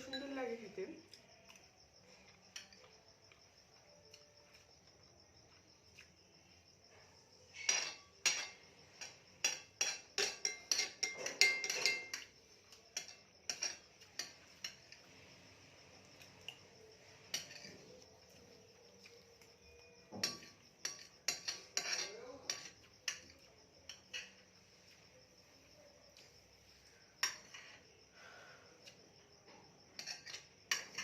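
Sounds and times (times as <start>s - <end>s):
spoon clinking against a plate: 7.4s - 15.3s, 16.2s - 25.0s, 27.2s - 27.8s, 29.9s - 31.0s.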